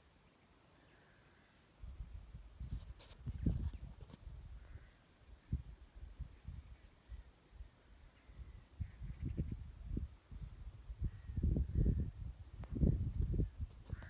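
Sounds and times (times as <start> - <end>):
insects chirping: 0.0 - 14.0
wind buffeting microphone: 1.8 - 4.8, 8.3 - 14.0.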